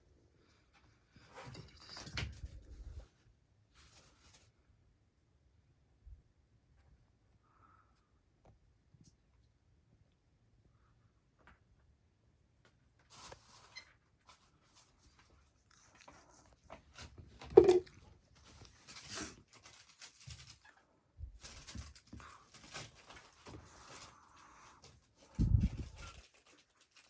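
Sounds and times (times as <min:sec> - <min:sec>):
soft rustling and scratching: 0:00.5 - 0:04.7, 0:12.6 - 0:27.0.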